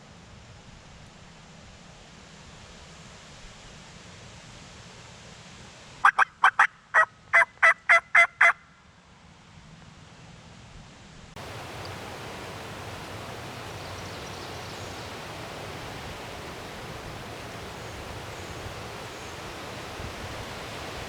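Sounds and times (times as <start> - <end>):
faint high chirps: 11.4 - 21.0
wind through trees and leaves: 11.4 - 21.0.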